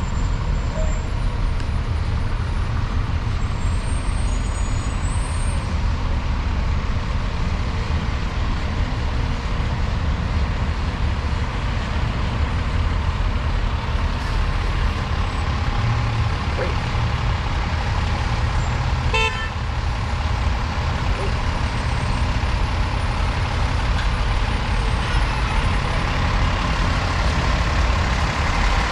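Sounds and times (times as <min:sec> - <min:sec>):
city street traffic rumble: 0:00.0 - 0:28.9
car horn toot: 0:19.1 - 0:19.6.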